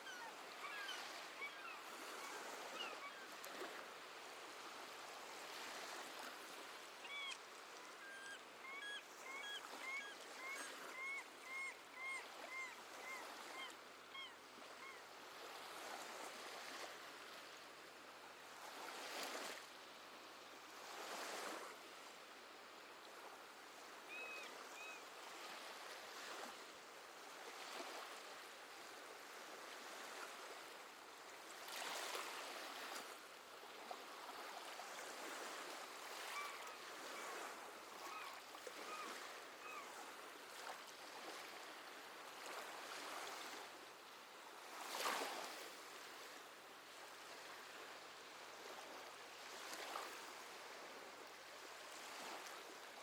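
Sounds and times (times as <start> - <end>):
seabirds chirping: 7.0 - 13.5.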